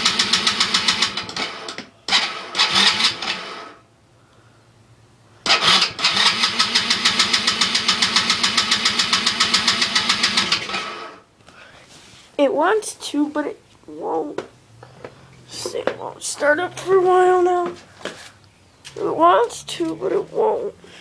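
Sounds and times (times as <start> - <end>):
engine cranking without starting: 0.0 - 3.8, 5.4 - 11.2.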